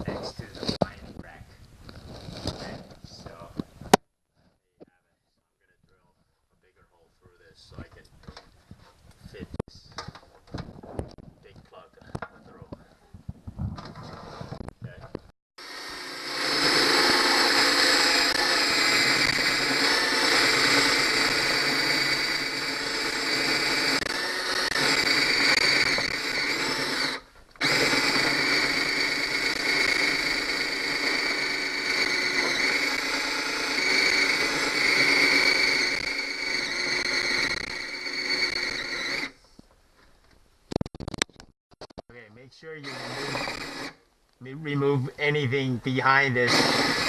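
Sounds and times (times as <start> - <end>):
power drill boring through wood: 15.6 - 39.4, 42.8 - 44.0, 44.7 - 47.0.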